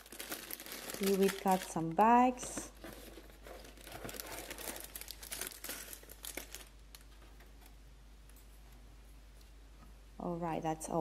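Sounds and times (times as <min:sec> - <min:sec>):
plastic bags crinkling: 0:00.0 - 0:07.8.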